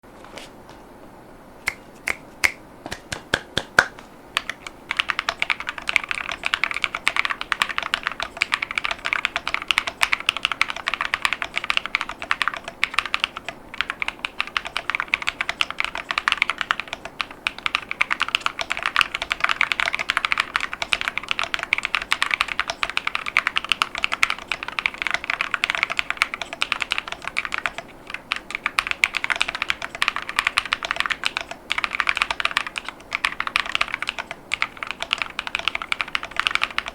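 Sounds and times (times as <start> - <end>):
typing on a mechanical keyboard: 3.8 - 36.9.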